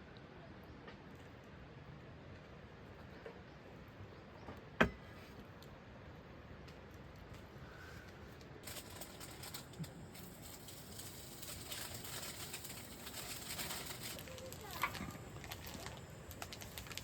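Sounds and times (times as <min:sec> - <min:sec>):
food sizzling in a hot pan: 0:10.2 - 0:16.0.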